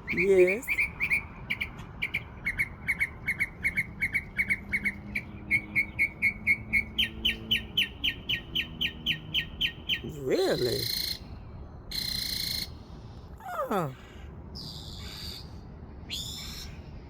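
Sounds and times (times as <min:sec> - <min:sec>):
songbird whistling repeated notes: 0:00.0 - 0:11.2.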